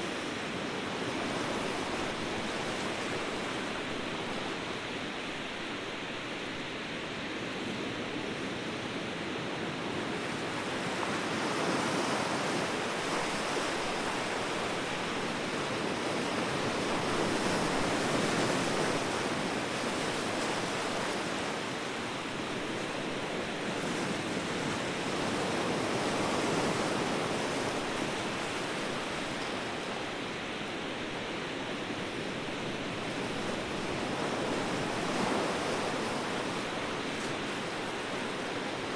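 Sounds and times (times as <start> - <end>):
ocean surf washing: 0.0 - 38.9.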